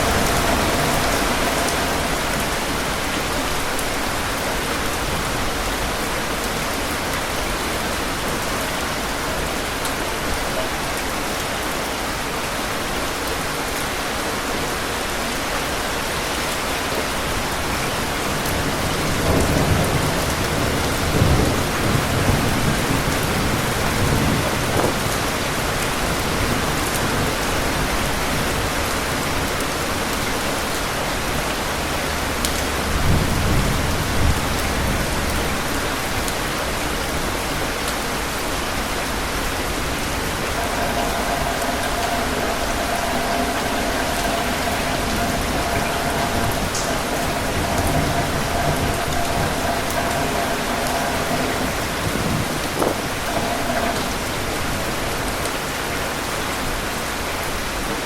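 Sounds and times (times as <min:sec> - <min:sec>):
thunder rumbling: 0:00.0 - 0:10.8, 0:17.4 - 0:28.6, 0:38.8 - 0:55.7
steady rain: 0:00.0 - 0:58.0.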